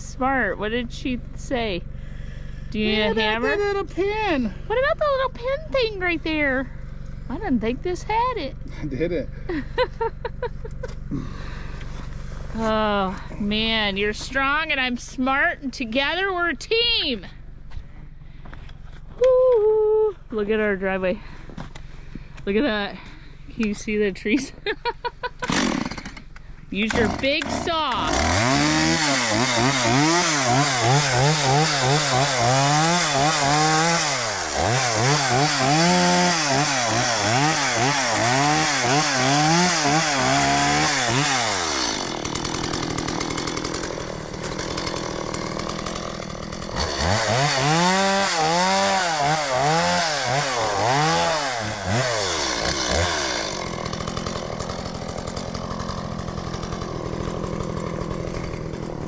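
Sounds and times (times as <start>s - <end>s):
chainsaw cutting wood: 0.6s - 8.6s, 25.2s - 59.0s.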